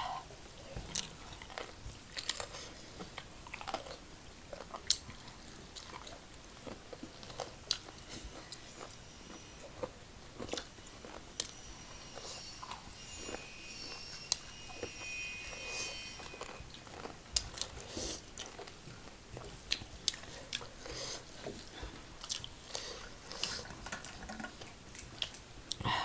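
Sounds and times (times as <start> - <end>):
chewing and crunching food: 0.9 - 11.2, 17.0 - 23.0.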